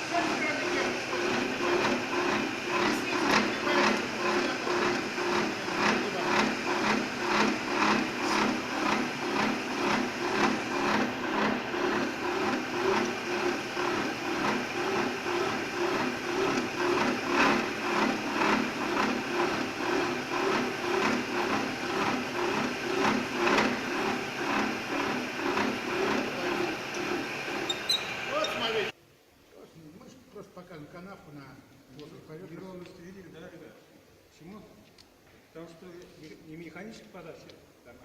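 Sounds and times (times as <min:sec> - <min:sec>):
milling machine cutting metal: 0:00.0 - 0:28.9.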